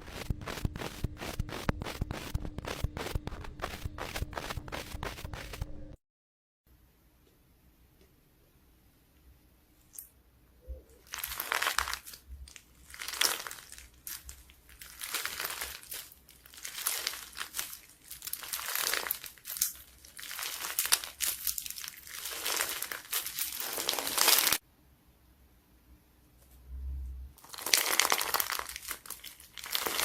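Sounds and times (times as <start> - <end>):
slime crackling and crunching: 0.0 - 5.6, 11.1 - 24.6, 27.4 - 30.0.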